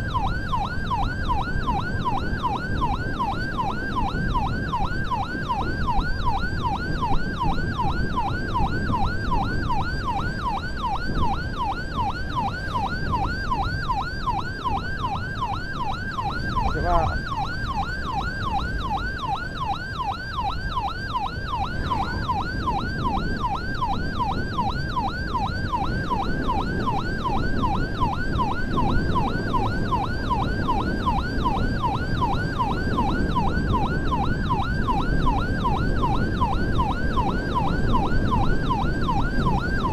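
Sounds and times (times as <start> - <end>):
ambulance siren yelping: 0.0 - 39.9
road and engine noise: 0.0 - 39.9.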